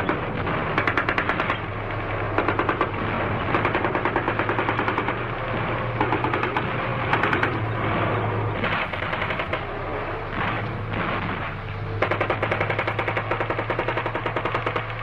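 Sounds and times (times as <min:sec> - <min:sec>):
automatic rifle fire: 0:00.0 - 0:01.7, 0:08.6 - 0:09.6, 0:10.4 - 0:15.0.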